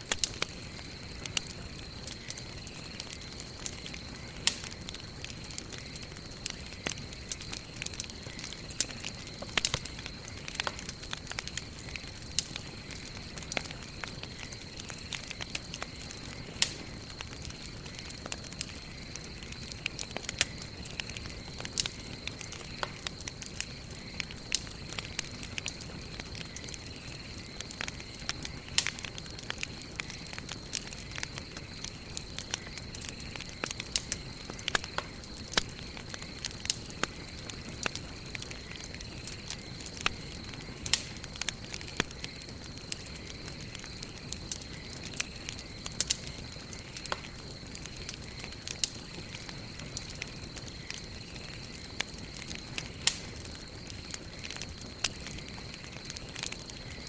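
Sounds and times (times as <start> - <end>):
wood fire crackling and popping: 0.0 - 57.0.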